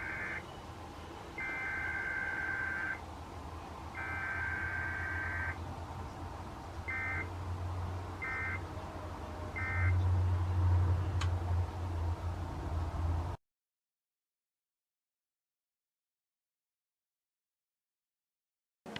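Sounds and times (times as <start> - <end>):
warbling digital data bursts: 1.4 - 3.0.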